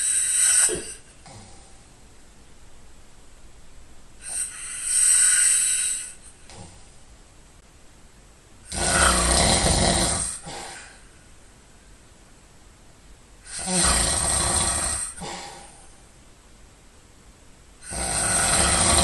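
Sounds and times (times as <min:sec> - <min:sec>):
man snoring: 0:00.0 - 0:01.4, 0:04.2 - 0:06.6, 0:08.7 - 0:10.8, 0:13.5 - 0:15.4, 0:17.8 - 0:19.0.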